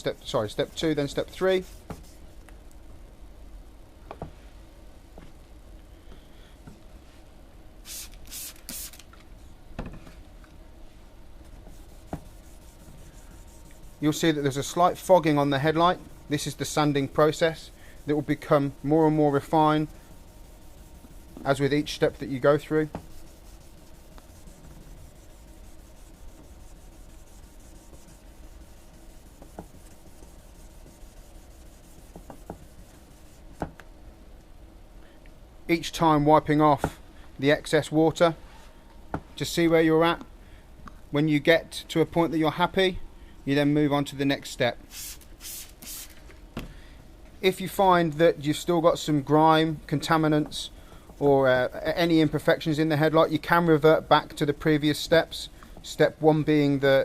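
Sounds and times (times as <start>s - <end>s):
spray bottle squirting: 7.9s - 9.0s
sanding block rubbing wet plastic: 11.7s - 14.8s, 15.7s - 33.5s.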